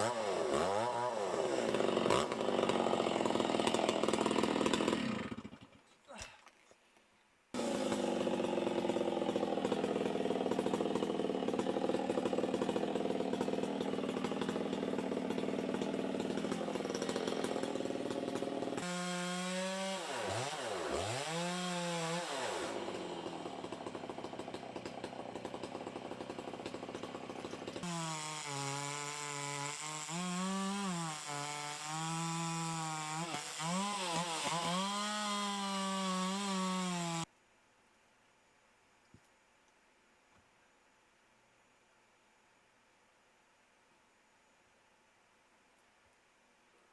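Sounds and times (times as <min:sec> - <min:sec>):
chainsaw cutting timber: 0:00.0 - 0:05.9, 0:07.5 - 0:37.3.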